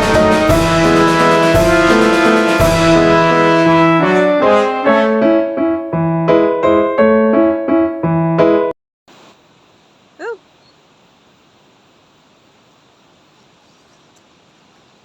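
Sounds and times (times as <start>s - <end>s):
keyboard chords: 0.0s - 8.7s
faint steady hiss: 9.1s - 15.0s.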